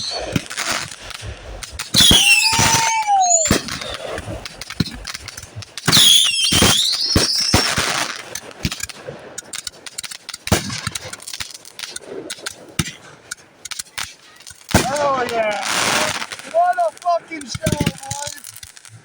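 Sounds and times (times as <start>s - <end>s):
shrill wavering firework whistle: 0.0s - 8.1s
fireworks bangs: 0.0s - 9.2s, 13.9s - 19.0s
firework cracks and pops: 0.0s - 19.0s.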